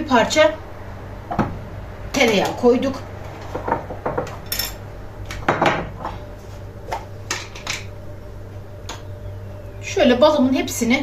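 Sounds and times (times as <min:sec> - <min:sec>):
utensils clinking against dishes: 0:04.2 - 0:04.8.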